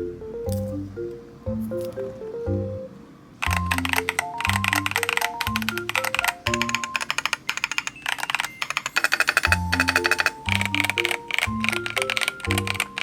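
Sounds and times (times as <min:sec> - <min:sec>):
mechanical keyboard typing: 0:03.4 - 0:13.0.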